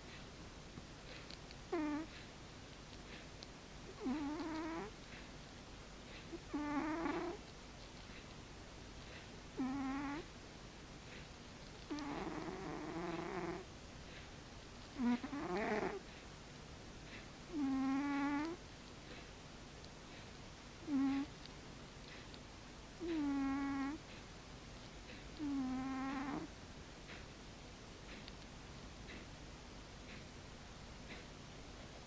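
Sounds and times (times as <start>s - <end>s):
cat snoring: 1.7s - 2.2s, 3.9s - 5.0s, 6.3s - 7.4s, 9.6s - 10.3s, 11.9s - 13.7s, 15.0s - 16.0s, 17.5s - 18.6s, 20.8s - 21.3s, 23.0s - 24.0s, 25.4s - 26.5s.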